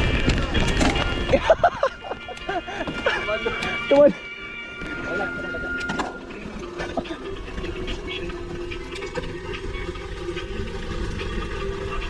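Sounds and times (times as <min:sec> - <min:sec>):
light clicks and rattles: 0:02.1 - 0:04.1.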